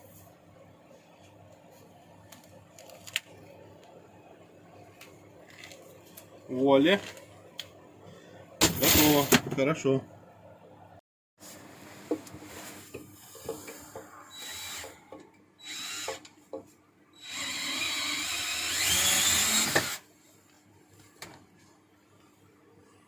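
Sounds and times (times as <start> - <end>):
cordless drill whining: 14.3 - 15.0, 15.6 - 16.2, 17.2 - 20.0.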